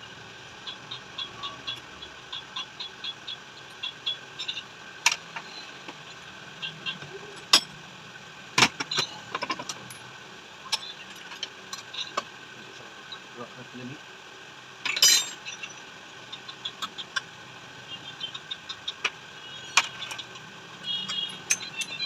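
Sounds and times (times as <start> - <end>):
steady background hum: 0.0 - 22.0
metal parts clicking and tapping: 8.6 - 10.0, 14.8 - 15.5, 19.8 - 22.0.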